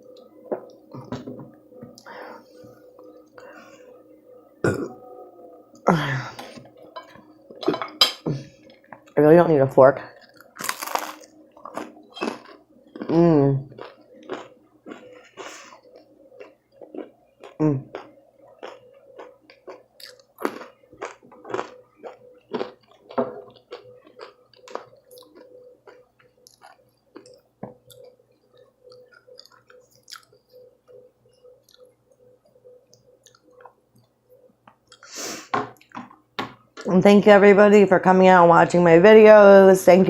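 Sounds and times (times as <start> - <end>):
faint steady hum: 0.0 - 40.0
chewing crunchy food: 10.1 - 30.7, 31.6 - 31.9.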